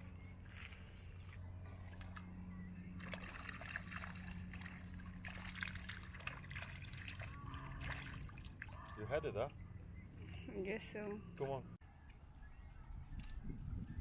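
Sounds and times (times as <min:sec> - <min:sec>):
water lapping and trickling: 0:00.0 - 0:11.6
steady low hum: 0:00.0 - 0:14.0
small splashes and drips: 0:00.4 - 0:02.3, 0:03.0 - 0:09.1.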